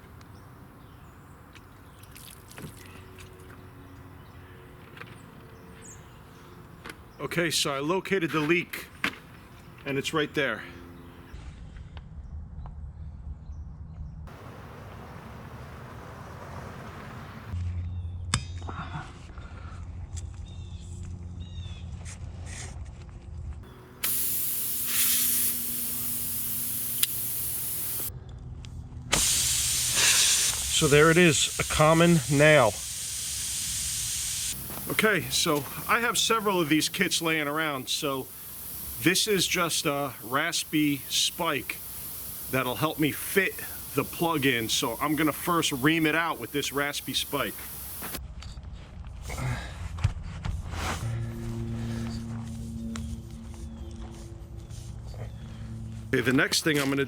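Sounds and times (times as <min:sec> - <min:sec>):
water dripping: 0:02.0 - 0:03.4
air hissing from tire: 0:23.7 - 0:28.1, 0:29.1 - 0:48.2.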